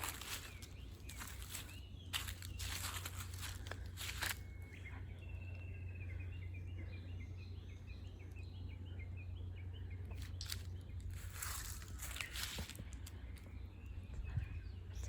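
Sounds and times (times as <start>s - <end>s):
footsteps on dry leaves: 0.0s - 5.0s, 10.1s - 13.5s
low rumble: 0.0s - 15.0s
songbird chirping: 0.0s - 15.0s.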